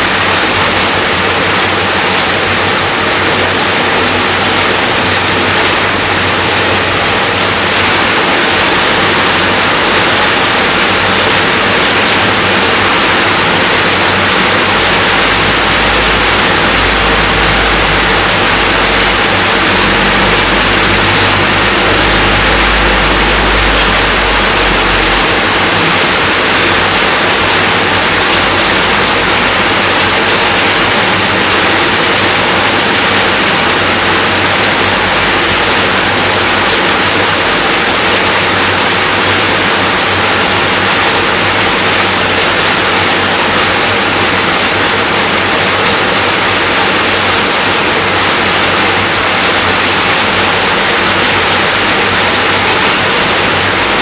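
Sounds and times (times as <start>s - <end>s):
steady rainfall: 0.0s - 54.0s
low rumble: 14.4s - 29.6s.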